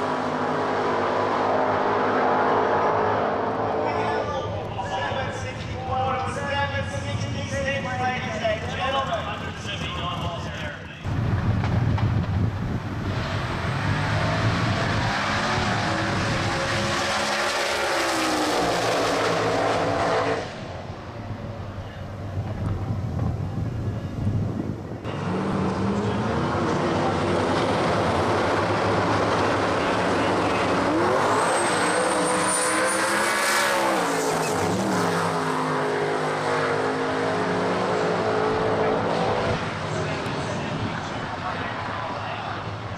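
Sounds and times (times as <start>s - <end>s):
drag car engine revving: 11.1s - 20.7s, 25.1s - 41.4s.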